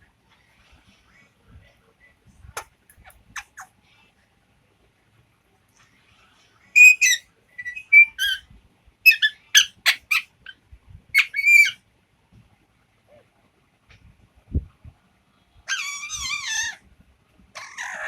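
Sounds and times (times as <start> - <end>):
parrot whistling and squawking: 6.8 - 8.4, 9.0 - 10.3, 11.1 - 11.8, 15.7 - 16.8.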